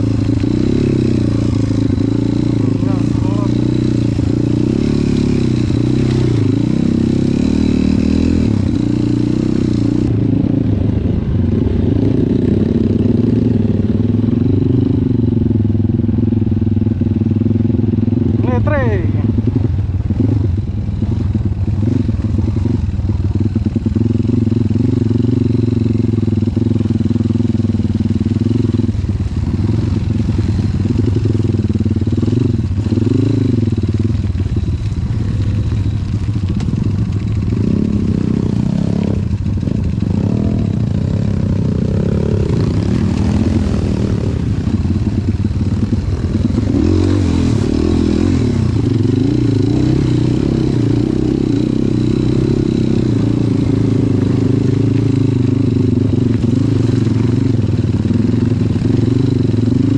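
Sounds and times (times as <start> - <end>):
motorcycle engine revving: 0.0 - 59.9
clatter: 30.6 - 38.2.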